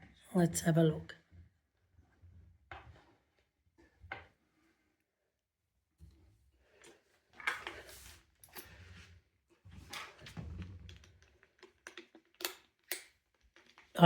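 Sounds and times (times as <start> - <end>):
soft rustles and scrapes: 1.1 - 5.1, 5.9 - 12.3.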